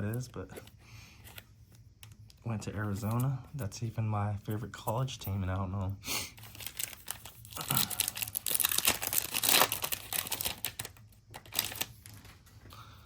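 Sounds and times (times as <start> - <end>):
plastic wrapper crinkling and tearing: 6.4 - 12.4.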